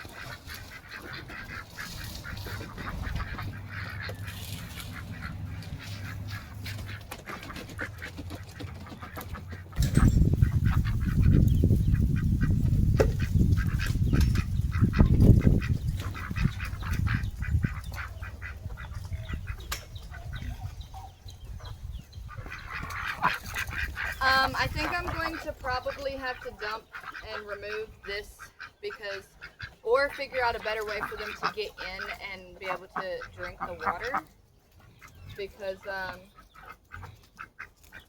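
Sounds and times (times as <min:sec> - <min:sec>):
ducks calling: 0:00.0 - 0:38.0
low rumble on microphone: 0:09.8 - 0:25.8.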